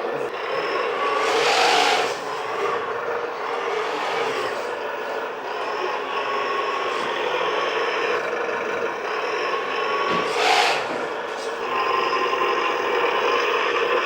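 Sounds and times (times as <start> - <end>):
toy car motor whine: 0.0 - 14.0
tyres scraping on a tabletop: 3.5 - 4.8.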